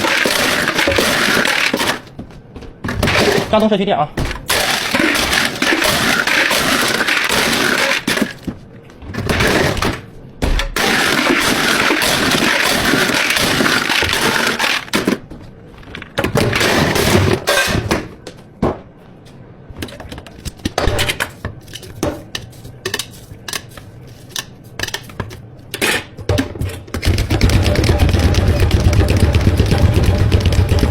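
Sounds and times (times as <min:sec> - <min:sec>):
loud harsh machine noise: 0:04.5 - 0:08.4.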